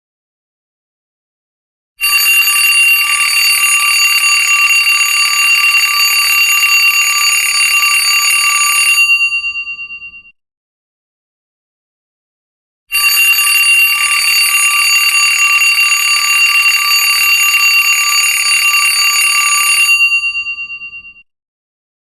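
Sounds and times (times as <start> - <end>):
alarm bell ringing: 2.0 - 10.4, 12.9 - 21.3.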